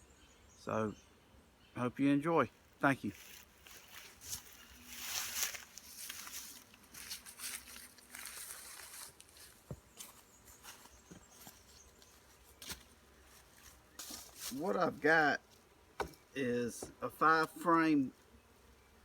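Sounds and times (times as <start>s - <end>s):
rustling and handling noise: 3.1s - 17.6s.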